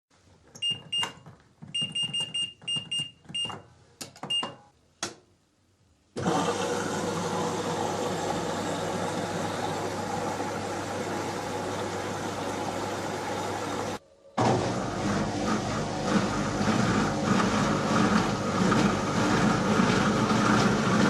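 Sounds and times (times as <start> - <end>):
washing machine rushing hum: 6.2 - 21.0.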